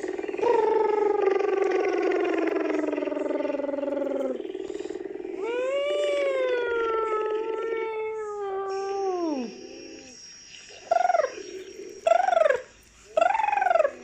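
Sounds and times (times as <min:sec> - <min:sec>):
long drawn-out animal call: 0:00.0 - 0:10.2.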